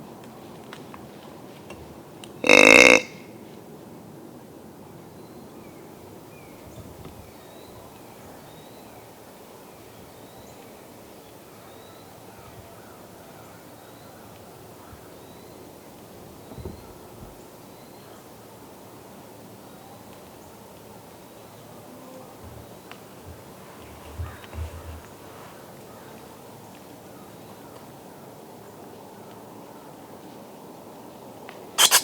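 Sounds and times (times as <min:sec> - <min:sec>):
deer grunt call: 0:02.4 - 0:03.2.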